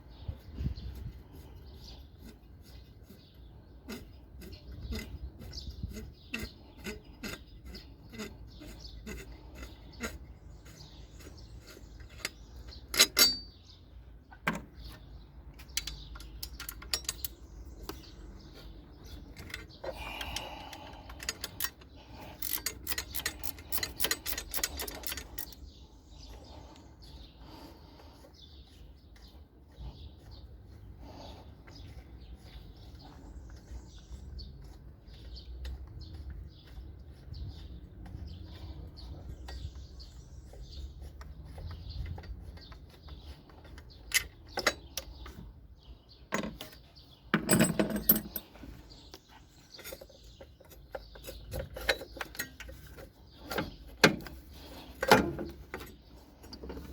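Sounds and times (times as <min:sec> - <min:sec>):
hand tools clicking on metal: 0:03.9 - 0:13.5, 0:15.6 - 0:18.1, 0:19.2 - 0:25.7.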